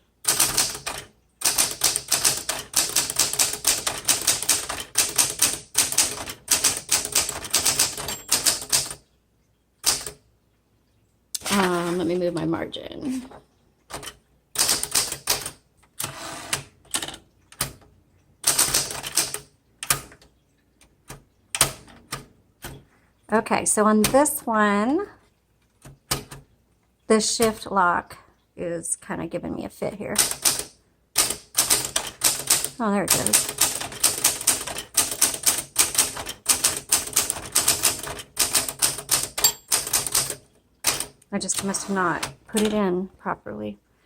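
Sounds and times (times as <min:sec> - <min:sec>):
manual typewriter clacking: 0:00.2 - 0:09.0, 0:09.8 - 0:10.2, 0:13.9 - 0:20.3, 0:21.0 - 0:22.8, 0:30.2 - 0:42.8.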